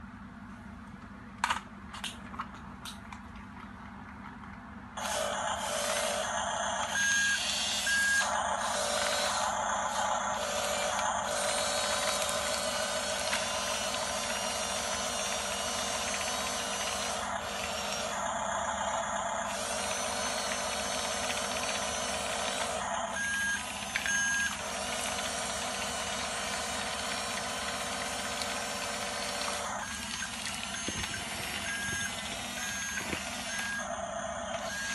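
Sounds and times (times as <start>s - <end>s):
simulated engine sound: 5.0s - 34.9s.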